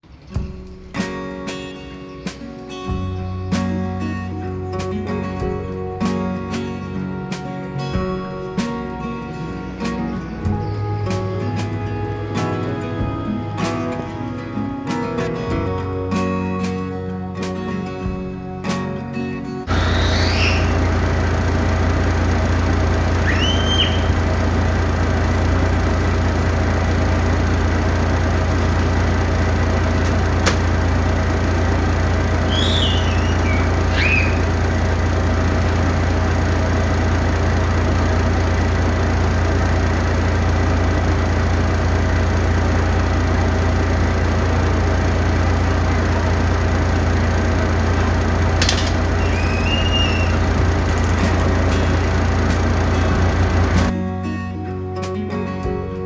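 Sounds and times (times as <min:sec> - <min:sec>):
low mechanical hum: 0:03.0 - 0:16.3, 0:19.6 - 0:54.0
short high chirps: 0:23.2 - 0:24.2, 0:32.5 - 0:34.4, 0:49.2 - 0:50.4
sharp clicks: 0:48.0 - 0:53.2.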